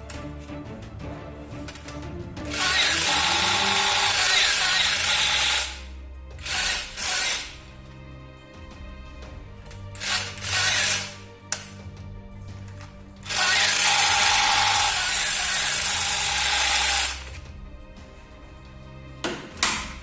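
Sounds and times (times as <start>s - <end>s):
background music: 0.0s - 20.0s
toy gun mechanical rattles: 2.5s - 5.8s, 6.4s - 7.6s, 10.0s - 11.7s, 13.3s - 17.3s
toy machine gun rattling burst: 2.5s - 5.8s, 6.4s - 7.6s, 10.0s - 11.2s, 13.3s - 17.3s.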